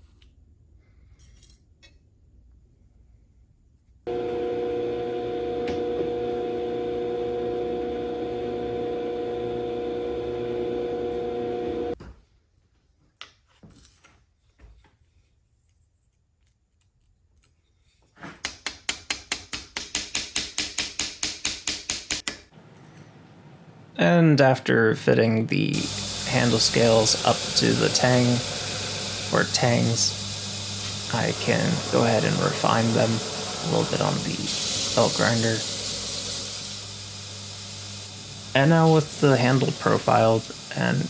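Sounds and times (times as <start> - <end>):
power tool humming: 4.1 - 12.0, 25.7 - 41.0.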